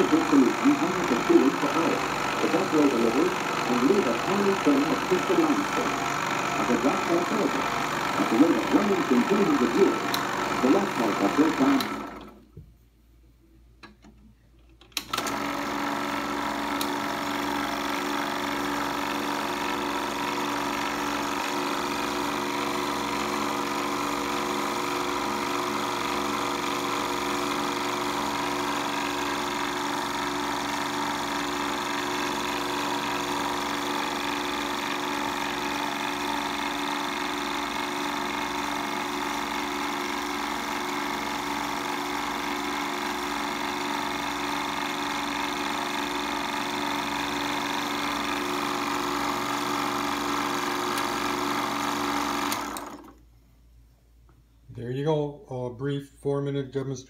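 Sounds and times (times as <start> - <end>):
film projector clatter: 0.0 - 12.4, 15.0 - 53.2
motor hum: 0.0 - 12.6, 15.0 - 53.2.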